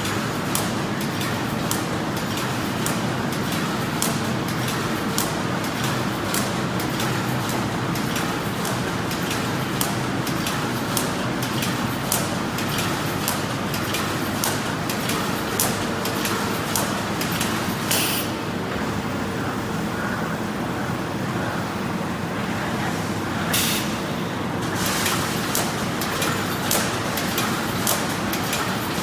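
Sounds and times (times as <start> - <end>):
sharp mechanical clicks: 0.0 - 18.2, 24.6 - 29.0
welding machine running: 0.0 - 18.6, 23.5 - 29.0.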